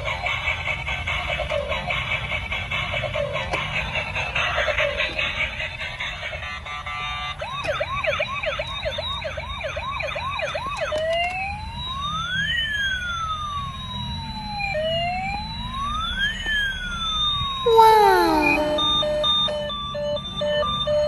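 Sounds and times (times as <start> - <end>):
toy electronic siren: 0.4 - 21.0.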